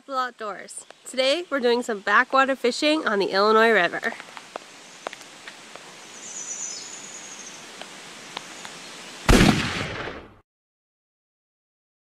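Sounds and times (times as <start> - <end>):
faint scattered clicks: 0.8 - 1.4, 4.0 - 5.9.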